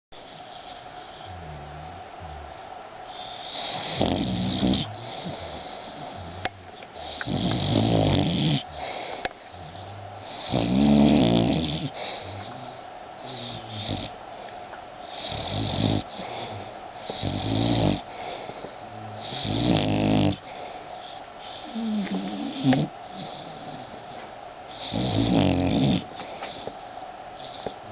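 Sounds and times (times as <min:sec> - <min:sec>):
dog snoring loudly: 0:00.2 - 0:02.5, 0:03.1 - 0:14.2, 0:15.0 - 0:26.8, 0:27.4 - 0:27.9.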